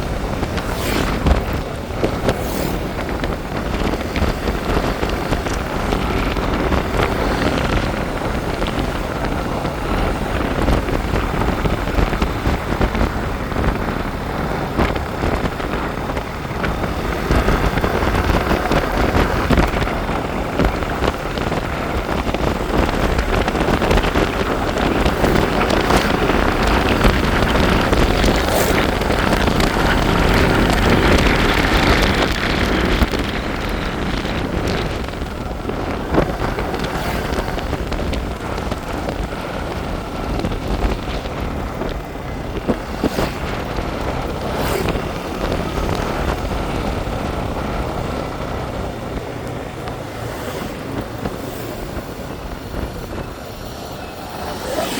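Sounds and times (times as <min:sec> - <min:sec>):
low rumble of motorbike ride: 0:00.0 - 0:54.9
wind buffeting microphone: 0:00.0 - 0:54.9.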